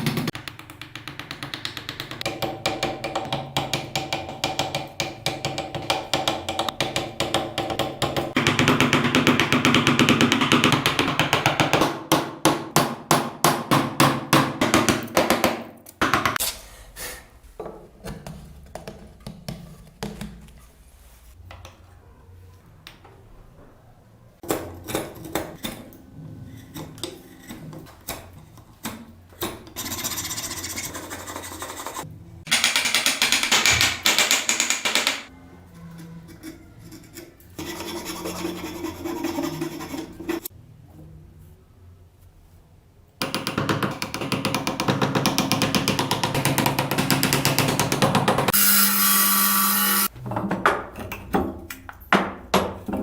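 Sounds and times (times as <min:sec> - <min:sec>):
hammer strikes on wood: 0:00.0 - 0:16.4, 0:43.2 - 0:48.6
rasping or sanding wood: 0:29.8 - 0:32.1, 0:37.6 - 0:40.5.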